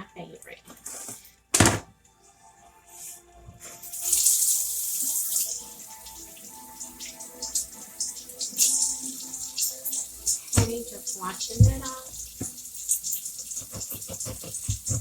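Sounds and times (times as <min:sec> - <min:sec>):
tap running into sink: 0:10.3 - 0:15.0.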